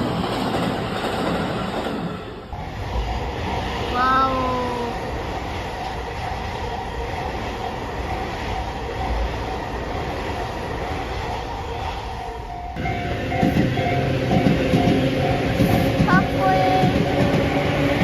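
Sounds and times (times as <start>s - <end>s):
train wheels on rails: 0.0s - 18.0s
level crossing warning bell: 12.4s - 17.3s.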